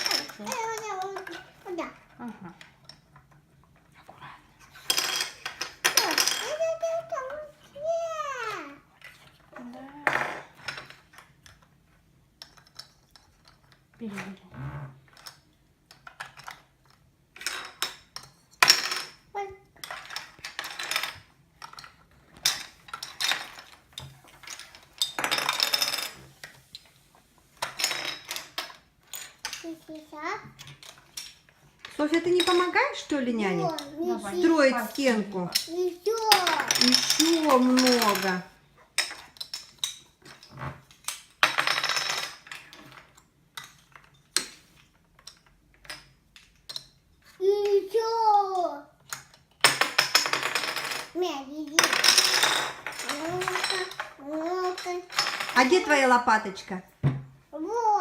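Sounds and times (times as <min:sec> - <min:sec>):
plastic bricks clicking and clattering: 0:35.5 - 0:47.0.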